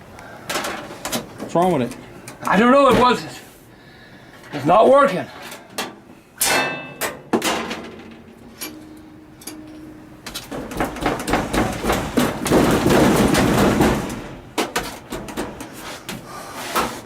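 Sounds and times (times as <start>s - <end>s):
faint steady hum: 0.0s - 17.0s
clattering and banging on metal: 5.5s - 15.8s
knocking on laundry machine: 10.5s - 14.4s.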